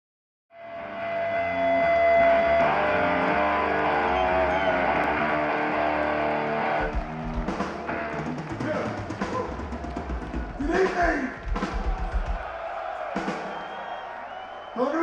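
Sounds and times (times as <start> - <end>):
distorted electric guitar feedback: 0.6 - 8.4
low drum thumps: 9.2 - 12.6.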